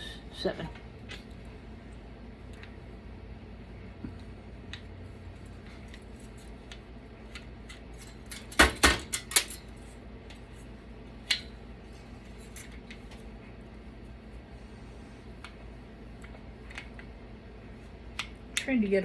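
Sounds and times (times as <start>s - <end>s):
metal clicks of computer parts: 7.4s - 9.6s.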